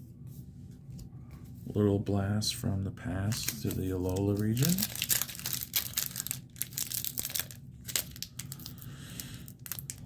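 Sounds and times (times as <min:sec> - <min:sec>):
foil wrapper crinkling: 0:03.3 - 0:10.0.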